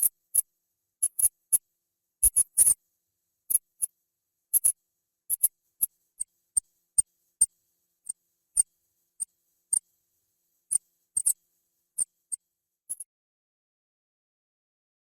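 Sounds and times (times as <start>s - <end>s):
rat squeaking: 2.2s - 2.8s.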